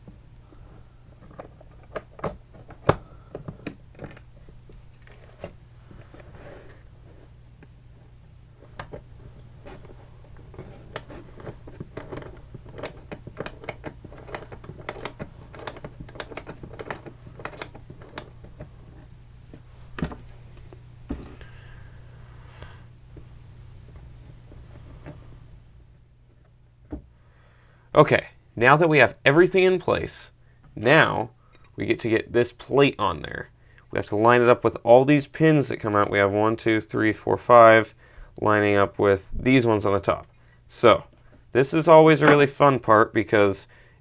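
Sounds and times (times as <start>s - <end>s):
low steady hum: 0.0s - 44.0s
small parts clicking and tapping: 0.5s - 6.3s, 8.6s - 19.1s.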